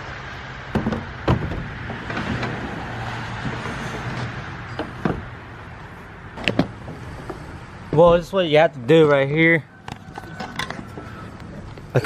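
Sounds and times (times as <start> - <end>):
sharp knocks: 0.7 - 2.5.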